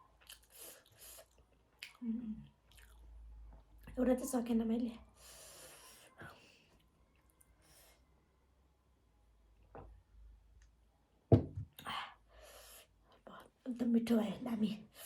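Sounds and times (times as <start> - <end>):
faint mouth clicks: 0.2 - 3.0.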